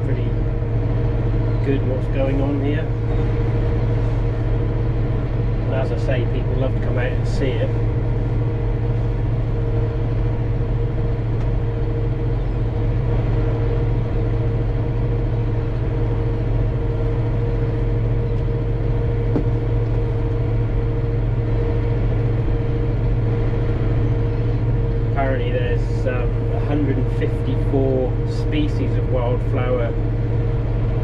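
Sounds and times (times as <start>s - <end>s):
tractor engine running under load: 0.0s - 31.0s.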